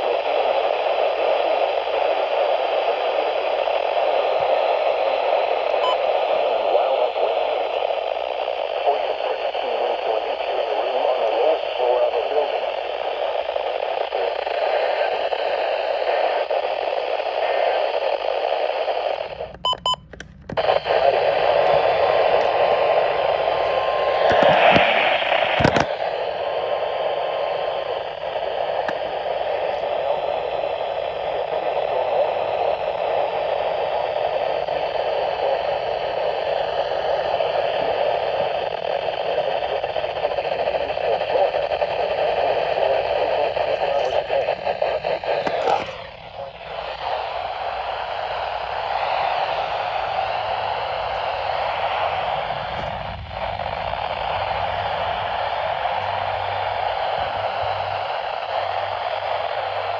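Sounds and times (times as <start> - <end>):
radio static hiss: 0.0 - 59.9
static crackle ending in click: 0.0 - 59.9.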